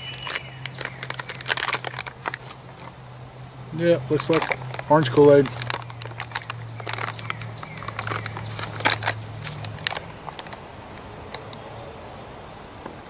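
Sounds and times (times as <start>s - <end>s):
sharp clicks: 0.0s - 2.9s, 4.1s - 11.6s
plastic pouch crinkling: 0.0s - 3.0s, 4.0s - 10.6s.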